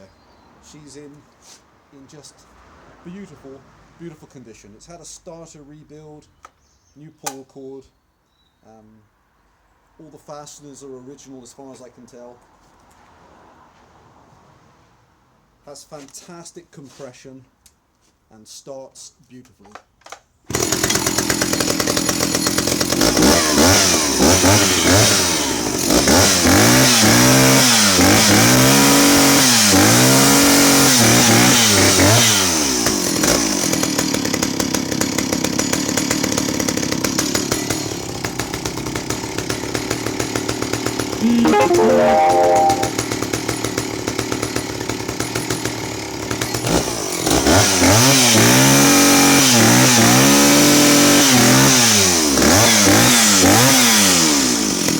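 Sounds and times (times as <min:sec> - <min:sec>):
chainsaw revving and idling: 0:20.5 - 0:54.9.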